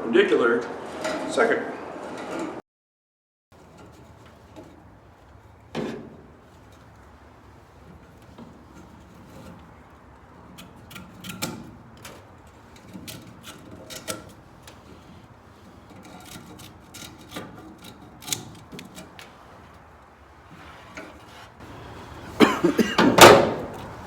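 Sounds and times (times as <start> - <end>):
rustling: 12.0 - 24.0.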